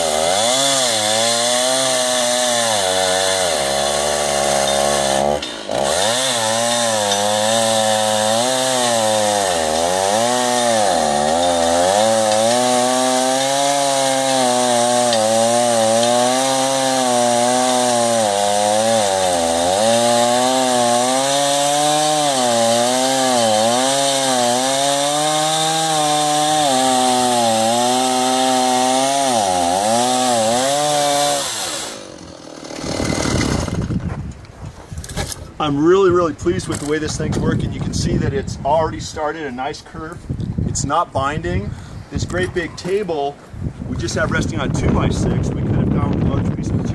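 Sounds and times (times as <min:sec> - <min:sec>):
chainsaw ripping a log: 0:00.0 - 0:34.3.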